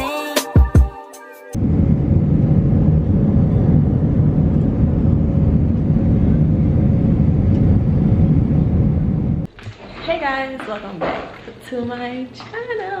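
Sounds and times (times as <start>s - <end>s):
vehicle rumbling in motion: 1.6s - 9.5s.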